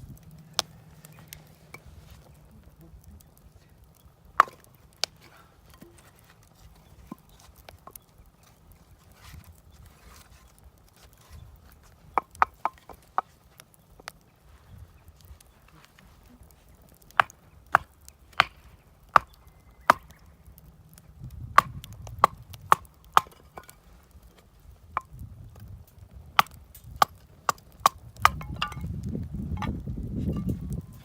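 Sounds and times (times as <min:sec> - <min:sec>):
chopping strikes on wood: 0:04.4 - 0:05.1, 0:17.2 - 0:20.2, 0:21.6 - 0:23.8, 0:26.4 - 0:28.9.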